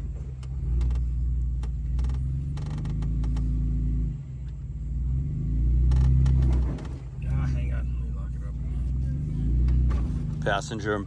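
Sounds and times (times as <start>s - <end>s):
body and suspension creaking: 0.0s - 3.7s, 5.8s - 7.5s
engine running at low revs: 0.0s - 11.0s.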